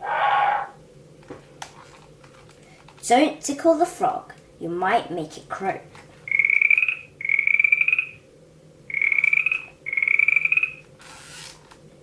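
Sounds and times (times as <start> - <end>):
recorded frog croaks from speaker: 6.3 - 8.2, 8.9 - 10.8.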